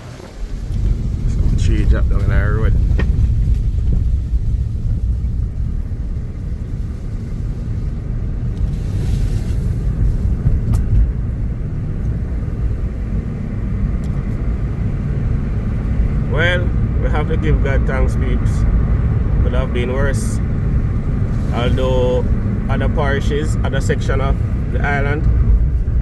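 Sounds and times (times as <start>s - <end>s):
car engine and road noise: 0.0s - 26.0s
brief hiss: 8.6s - 9.9s.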